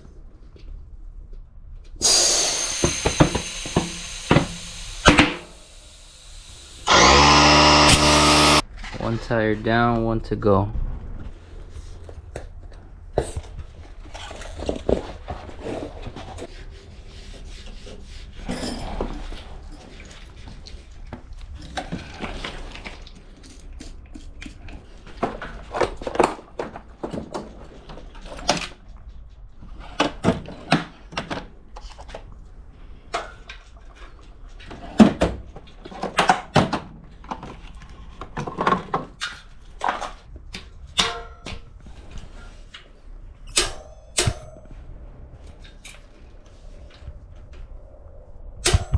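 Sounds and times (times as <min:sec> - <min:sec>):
rustling and scraping: 0:08.6 - 0:10.0, 0:10.8 - 0:31.1, 0:41.6 - 0:43.4.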